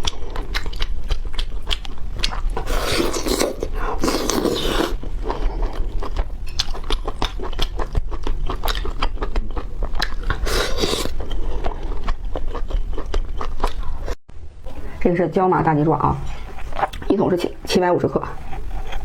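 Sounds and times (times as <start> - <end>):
wet chewing: 0.0 - 14.2, 18.4 - 19.0.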